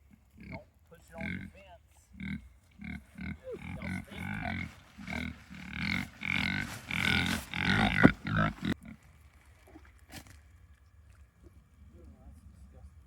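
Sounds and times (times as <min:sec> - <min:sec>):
pigs grunting: 0:00.0 - 0:09.1.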